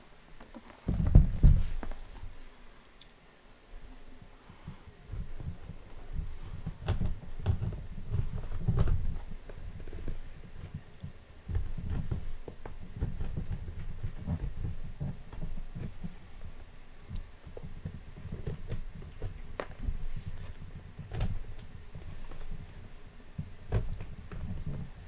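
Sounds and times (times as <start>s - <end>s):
cardboard box thuds and rubbing: 0.9s - 2.0s.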